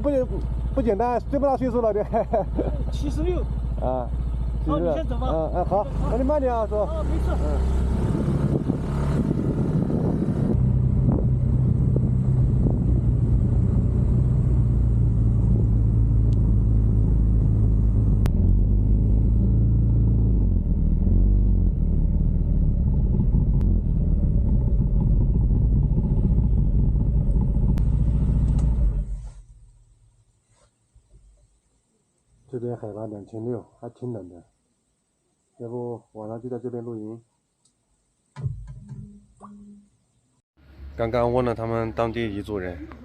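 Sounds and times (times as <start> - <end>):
motorcycle engine running: 0.0 - 29.5
wind rumble on microphone: 7.8 - 18.9.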